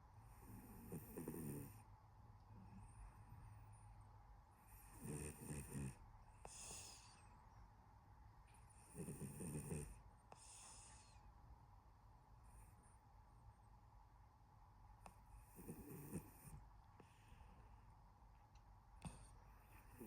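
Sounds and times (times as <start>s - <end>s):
cat snoring: 0.3s - 1.8s, 4.6s - 7.2s, 8.8s - 11.2s, 15.4s - 16.6s
cat breath hiss: 6.4s - 7.3s, 10.3s - 11.3s.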